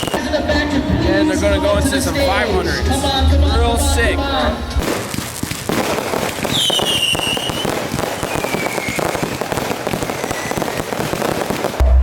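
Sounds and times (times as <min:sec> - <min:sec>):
fireworks falling whistle: 0:00.0 - 0:00.4, 0:04.7 - 0:11.9
fireworks crackling and popping: 0:00.0 - 0:12.0.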